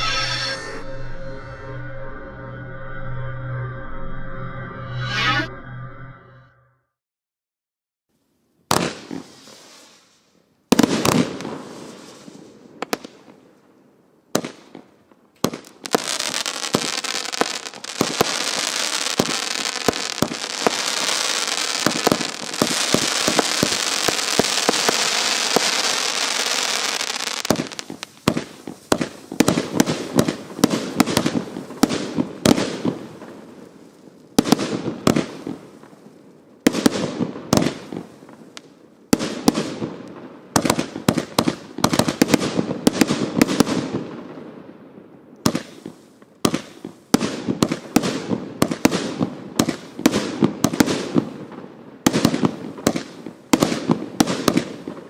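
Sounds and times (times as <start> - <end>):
firework shots: 8.7 - 9.9, 10.7 - 13.4, 14.3 - 33.7, 34.3 - 36.0, 36.7 - 40.0, 40.6 - 44.4, 45.4 - 55.0
firework crackling hiss: 8.7 - 13.4, 15.4 - 36.3, 45.5 - 51.3
firework bangs and pops: 8.7 - 13.6, 14.3 - 44.5, 45.4 - 55.0.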